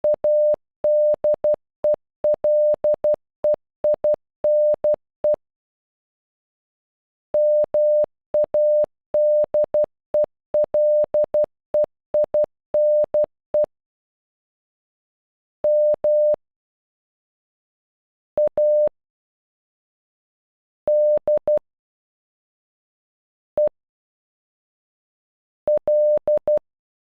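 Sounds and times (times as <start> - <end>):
morse code beeps: 0.0 - 1.6, 2.3 - 3.2, 7.4 - 13.7, 15.7 - 16.4, 18.4 - 18.9, 25.7 - 26.6.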